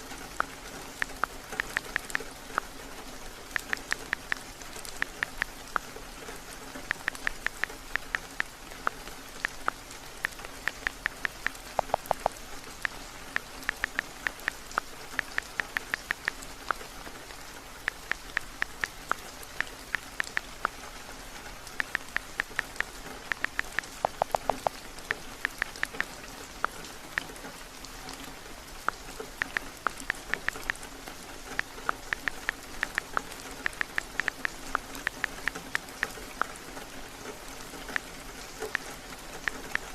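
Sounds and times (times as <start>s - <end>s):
heavy rain: 0.0s - 39.9s
phone keyboard clicking: 0.4s - 2.2s, 3.6s - 5.6s, 6.9s - 8.6s, 9.4s - 12.4s, 13.4s - 16.8s, 17.8s - 20.7s, 21.8s - 24.8s.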